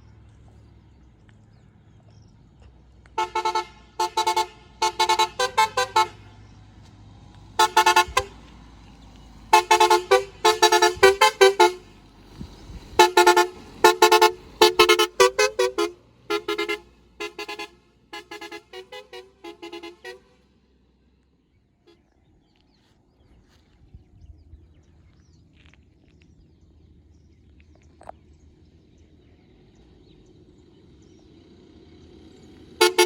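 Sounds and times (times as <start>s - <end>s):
multi-tone car horn toots: 3.1s - 6.4s, 7.6s - 8.5s, 9.5s - 12.1s, 12.9s - 20.4s, 32.7s - 33.0s.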